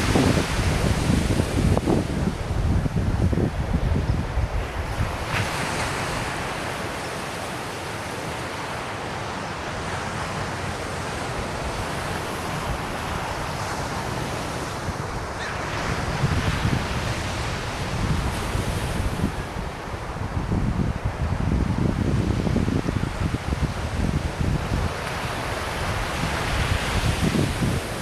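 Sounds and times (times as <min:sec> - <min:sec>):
ocean surf breaking: 0:00.0 - 0:03.6
wind buffeting microphone: 0:00.0 - 0:06.5, 0:14.8 - 0:28.0.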